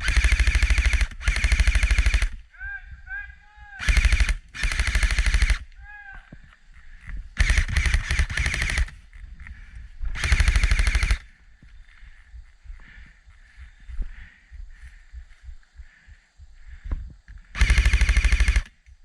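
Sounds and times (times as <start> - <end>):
airsoft rifle firing full auto: 0.0 - 2.4, 3.8 - 5.7, 7.4 - 9.0, 10.2 - 11.3, 17.6 - 18.8.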